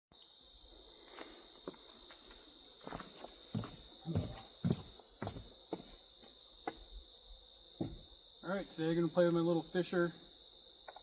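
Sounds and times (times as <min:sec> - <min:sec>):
insects chirping: 0:00.1 - 0:11.0
dull knocks: 0:07.8 - 0:08.1.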